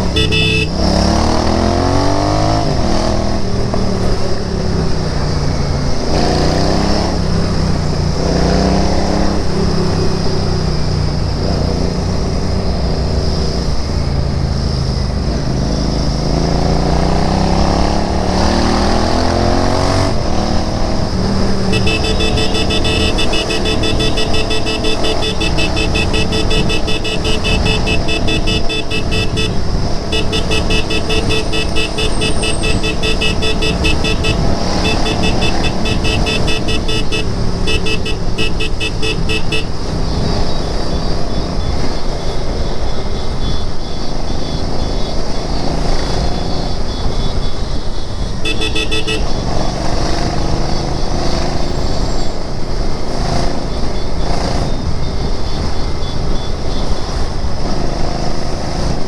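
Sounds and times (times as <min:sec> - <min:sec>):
motorcycle engine revving: 0:00.0 - 0:03.2, 0:17.5 - 0:40.3, 0:48.4 - 0:50.7
rapidly pulsing high-pitched tone: 0:21.7 - 0:39.7.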